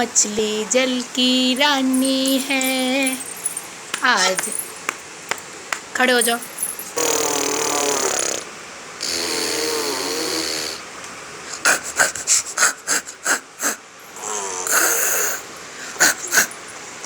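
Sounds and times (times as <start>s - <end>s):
baby making motorbike buzz: 7.0s - 10.9s, 12.9s - 16.6s.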